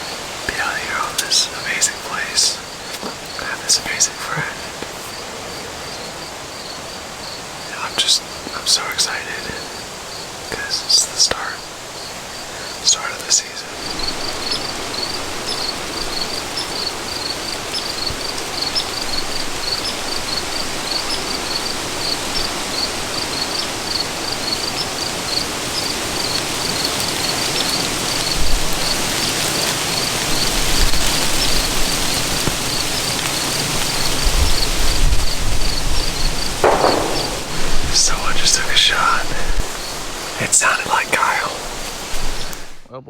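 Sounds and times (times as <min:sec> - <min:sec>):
cricket chirping: 0:00.0 - 0:42.9
outdoor hiss: 0:00.0 - 0:43.0
low rumbles: 0:36.1 - 0:40.7.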